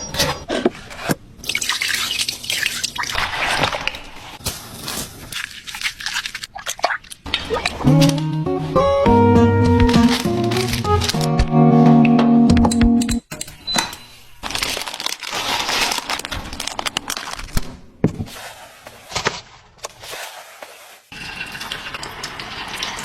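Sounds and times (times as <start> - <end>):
food packaging crinkling: 4.4 - 6.6, 9.9 - 11.3, 14.4 - 17.8
guitar music: 7.8 - 13.2.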